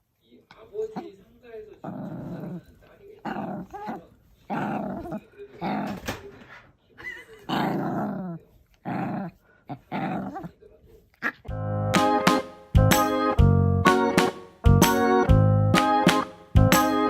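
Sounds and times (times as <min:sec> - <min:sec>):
dog growling: 0:01.7 - 0:06.5, 0:07.4 - 0:11.5
music: 0:11.5 - 0:17.0.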